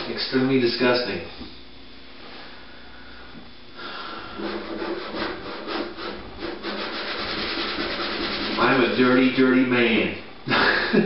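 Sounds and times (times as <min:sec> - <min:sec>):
rag scrubbing: 0:04.3 - 0:09.1.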